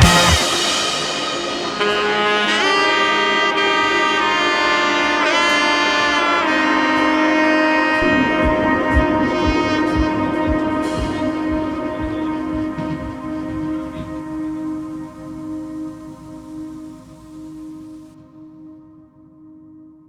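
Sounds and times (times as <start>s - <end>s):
steady low beat: 0.0s - 3.7s, 8.0s - 18.1s
melodic lead line with pitch bends: 0.0s - 17.7s.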